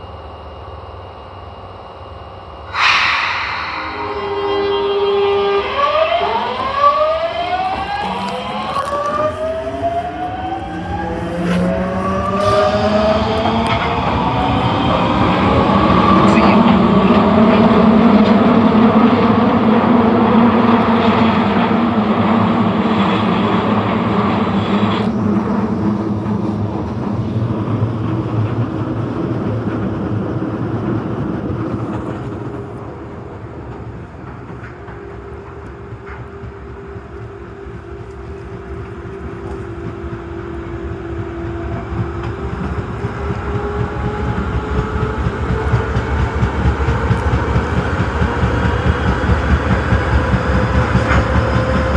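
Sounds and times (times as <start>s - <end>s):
subway train running: 0.0s - 51.9s
train motor whine: 4.3s - 18.4s, 32.0s - 51.9s.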